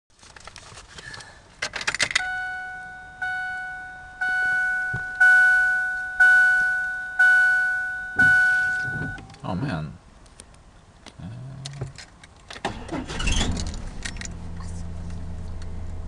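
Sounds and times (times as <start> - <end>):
car warning chime: 2.2 - 9.4.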